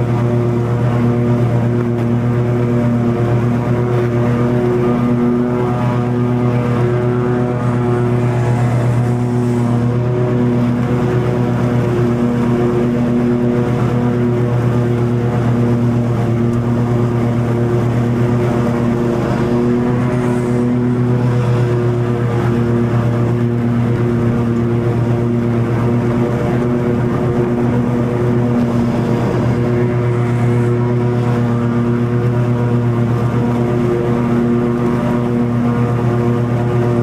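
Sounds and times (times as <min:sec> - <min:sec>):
lawn mower cutting grass: 0:00.0 - 0:37.0.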